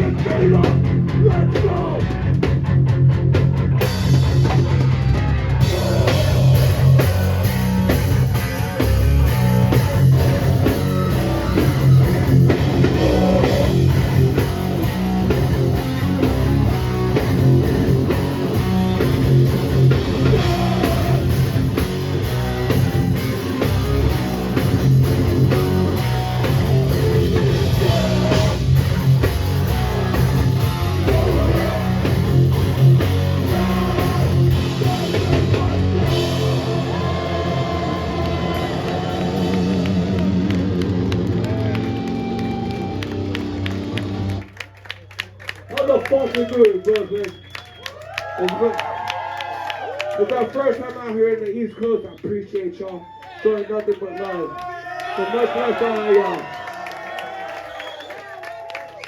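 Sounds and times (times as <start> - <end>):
hardcore band playing live: 0.0 - 44.6.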